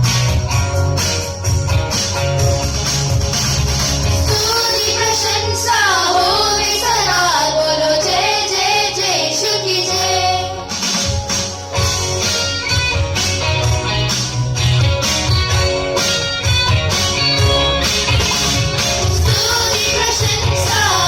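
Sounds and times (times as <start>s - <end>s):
percussion beat: 0.0s - 4.4s, 10.7s - 21.0s.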